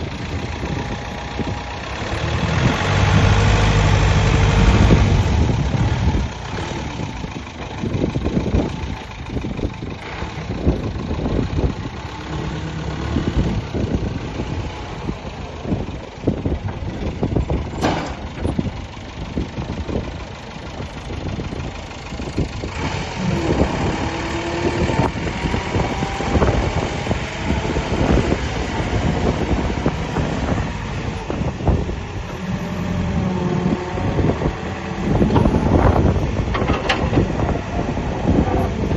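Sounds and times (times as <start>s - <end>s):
diesel engine running: 0.0s - 38.9s
metal knocks and clanks: 17.7s - 18.6s, 35.1s - 37.6s.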